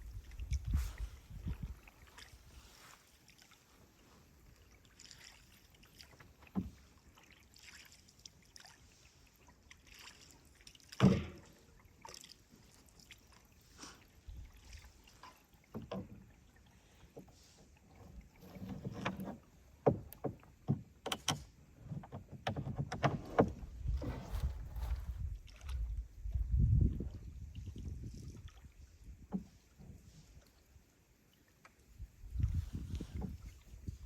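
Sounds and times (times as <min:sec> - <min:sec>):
quiet paddle strokes: 0:00.0 - 0:26.4, 0:27.0 - 0:34.0
paddle knocking against canoe hull: 0:06.1 - 0:07.0, 0:11.0 - 0:11.6, 0:15.5 - 0:25.8, 0:29.0 - 0:30.0, 0:32.4 - 0:34.0.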